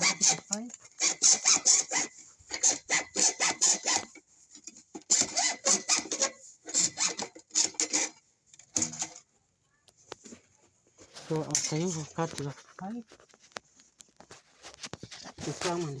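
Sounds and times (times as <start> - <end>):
hand saw cutting pipe: 0.0 - 9.2.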